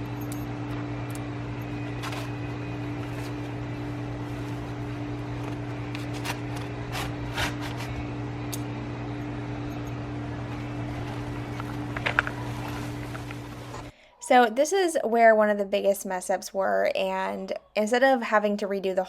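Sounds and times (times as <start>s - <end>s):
motor humming: 0.0s - 13.9s.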